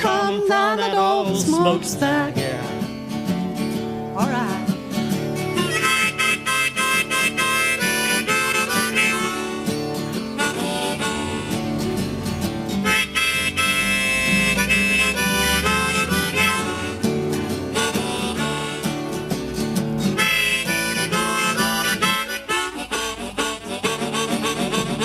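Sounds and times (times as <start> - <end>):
guitar accompaniment: 0.0 - 25.0
blues harmonica solo: 5.2 - 25.0.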